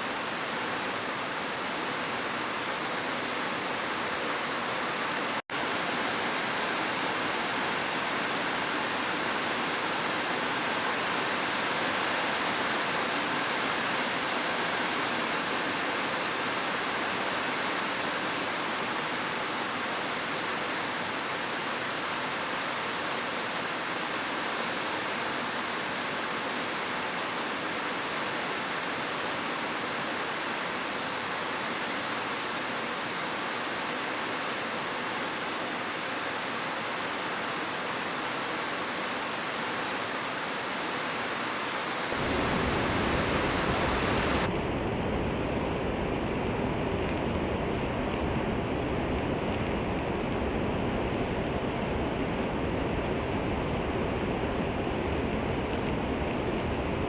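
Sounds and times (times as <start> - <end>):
heavy rain falling: 0.0 - 44.5.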